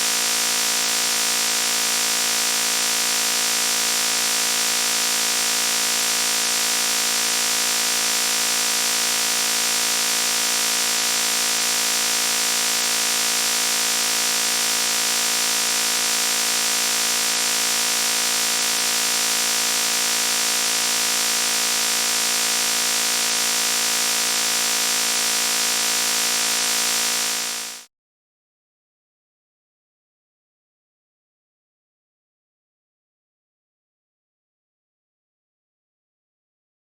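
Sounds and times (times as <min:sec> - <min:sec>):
harsh electronic buzzing tone: 0:00.0 - 0:27.9.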